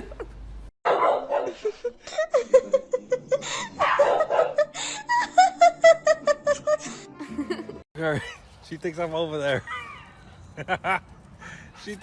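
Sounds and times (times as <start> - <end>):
person laughing hard: 1.4 - 8.4.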